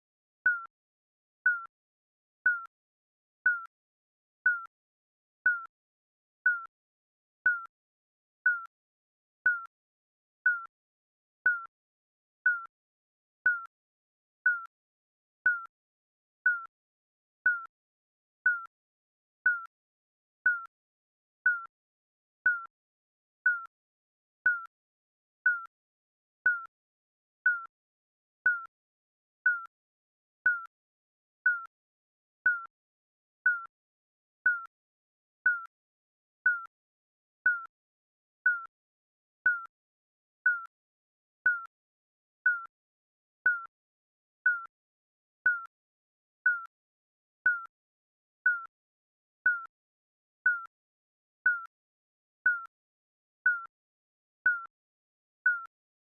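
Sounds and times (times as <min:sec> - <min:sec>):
timer beeping: 0:00.5 - 0:00.7, 0:01.5 - 0:01.7, 0:02.5 - 0:02.7, 0:03.5 - 0:03.7, 0:04.5 - 0:04.7, 0:05.5 - 0:05.7, 0:06.5 - 0:06.7, 0:07.5 - 0:07.7, 0:08.5 - 0:08.7, 0:09.5 - 0:09.7, 0:10.5 - 0:10.7, 0:11.5 - 0:11.7, 0:12.5 - 0:12.7, 0:13.5 - 0:13.7, 0:14.5 - 0:14.7, 0:15.5 - 0:15.7, 0:16.5 - 0:16.7, 0:17.5 - 0:17.7, 0:18.5 - 0:18.7, 0:19.5 - 0:19.7, 0:20.5 - 0:20.7, 0:21.5 - 0:21.7, 0:22.5 - 0:22.7, 0:23.5 - 0:23.7, 0:24.5 - 0:24.7, 0:25.5 - 0:25.7, 0:26.5 - 0:26.7, 0:27.5 - 0:27.7, 0:28.5 - 0:28.7, 0:29.5 - 0:29.7, 0:30.5 - 0:30.7, 0:31.5 - 0:31.7, 0:32.5 - 0:32.7, 0:33.5 - 0:33.7, 0:34.5 - 0:34.7, 0:35.5 - 0:35.7, 0:36.5 - 0:36.7, 0:37.5 - 0:37.7, 0:38.5 - 0:38.7, 0:39.5 - 0:39.7, 0:40.5 - 0:40.7, 0:41.5 - 0:41.7, 0:42.5 - 0:42.7, 0:43.5 - 0:43.7, 0:44.5 - 0:44.7, 0:45.5 - 0:45.7, 0:46.5 - 0:46.7, 0:47.5 - 0:47.7, 0:49.5 - 0:49.7, 0:50.5 - 0:50.7, 0:51.5 - 0:51.7, 0:54.5 - 0:54.7.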